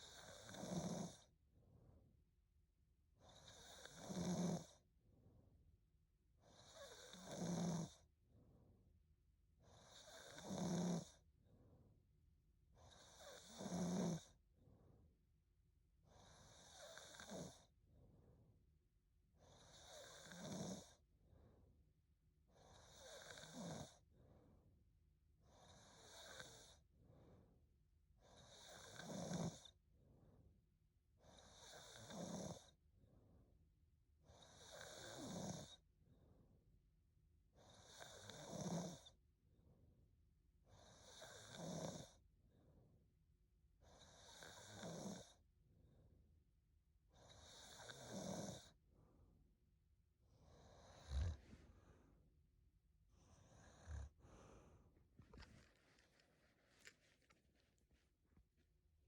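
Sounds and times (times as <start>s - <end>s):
woman snoring: 0.0s - 1.2s, 3.4s - 4.7s, 6.5s - 8.0s, 9.7s - 11.1s, 12.9s - 14.2s, 16.2s - 17.6s, 19.5s - 20.9s, 22.6s - 23.9s, 28.4s - 29.6s, 31.5s - 32.6s, 34.6s - 35.7s, 37.9s - 39.0s, 40.9s - 42.1s, 44.1s - 45.3s, 47.4s - 48.6s, 50.6s - 51.6s, 53.4s - 54.2s
soft breathing: 50.4s - 52.3s, 53.1s - 58.6s.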